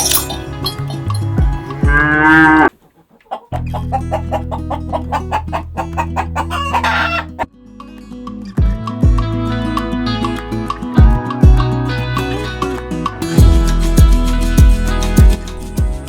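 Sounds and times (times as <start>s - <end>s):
background music with steady beat: 0.0s - 2.4s, 7.7s - 16.0s
chickens calling: 0.0s - 7.5s
rooster crowing: 6.2s - 7.4s.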